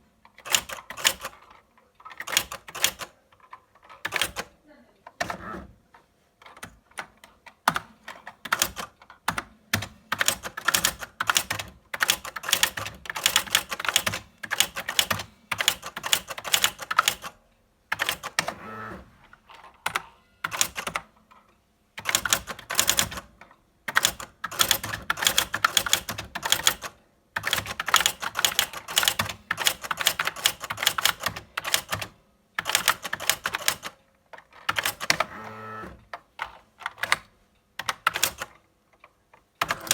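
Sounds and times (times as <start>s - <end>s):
electronic typewriter typing: 0.3s - 4.5s, 6.4s - 21.2s, 22.0s - 38.6s, 39.6s - 39.9s.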